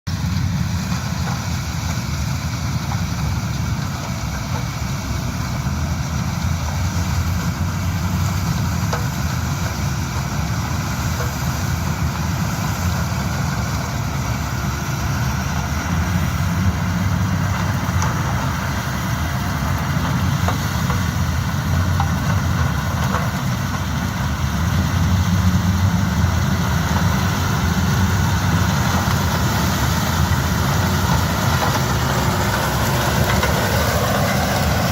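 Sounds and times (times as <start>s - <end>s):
harvester diesel engine running: 0.1s - 34.9s
noisy wash: 0.1s - 34.9s.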